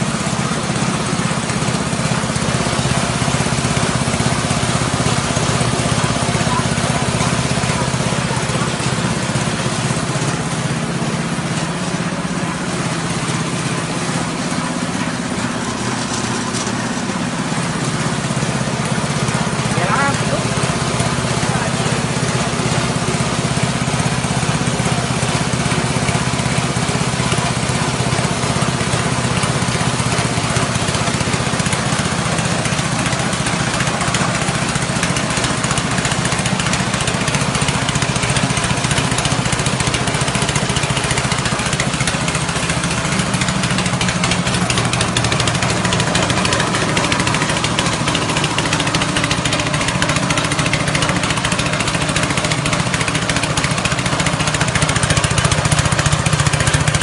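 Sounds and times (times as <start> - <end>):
grinding mill noise: 0.0 - 57.0
petrol engine running: 0.0 - 57.0.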